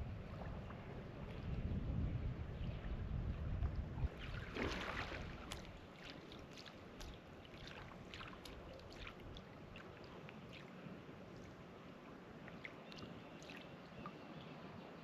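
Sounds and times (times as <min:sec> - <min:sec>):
wind rumble on microphone: 0:00.0 - 0:06.0
water dripping and trickling: 0:04.1 - 0:10.7
kayak paddle splash: 0:04.1 - 0:10.8.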